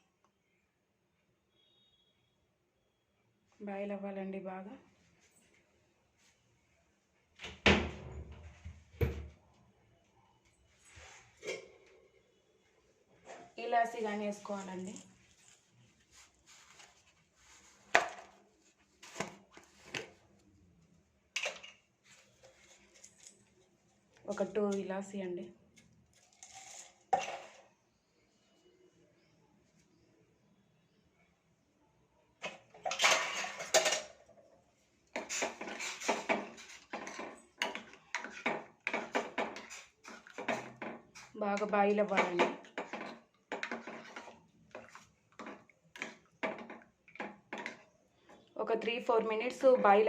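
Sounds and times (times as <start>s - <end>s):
metal utensils clattering on pot: 32.7s - 34.2s, 35.2s - 41.0s, 41.6s - 47.8s.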